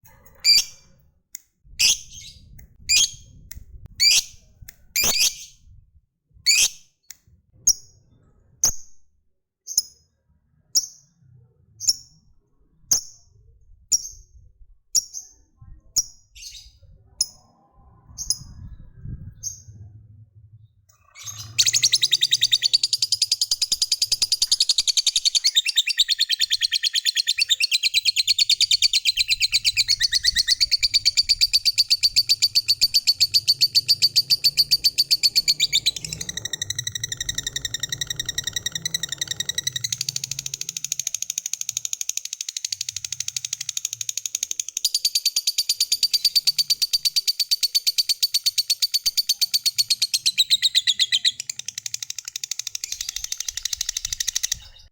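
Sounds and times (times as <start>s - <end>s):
bird chirping: 0.1s - 1.0s, 1.7s - 3.4s, 4.0s - 5.7s, 6.5s - 6.8s, 20.9s - 54.9s
bird chattering trill: 0.3s - 0.8s, 4.0s - 4.4s, 21.2s - 54.8s.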